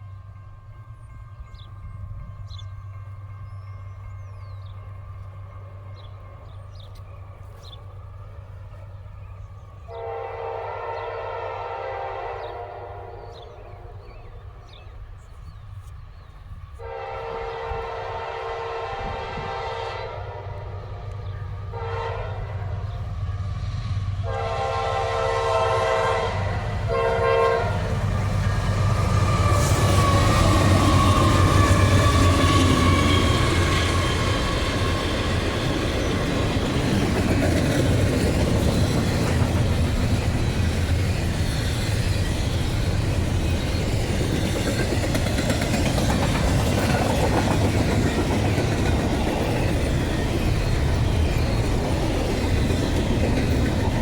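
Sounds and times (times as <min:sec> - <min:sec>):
train rushing past: 0:00.0 - 0:54.0
freight cars rumbling on rails: 0:01.1 - 0:54.0
locomotive horn blasts: 0:09.9 - 0:14.1, 0:16.8 - 0:23.0, 0:24.2 - 0:28.4.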